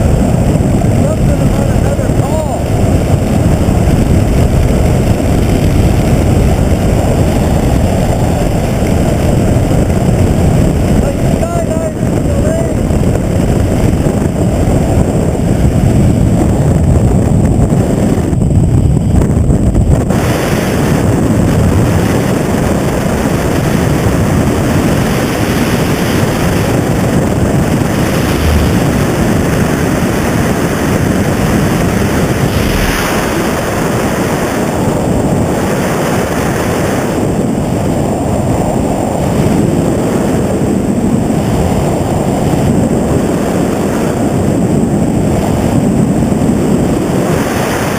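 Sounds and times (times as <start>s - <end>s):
vehicle engine rumble: 0.0s - 35.6s
wind buffeting microphone: 0.0s - 47.9s.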